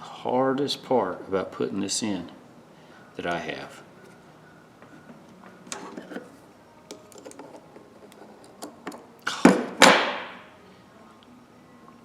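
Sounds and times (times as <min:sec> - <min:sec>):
small metal clicks and taps: 0:06.9 - 0:09.0.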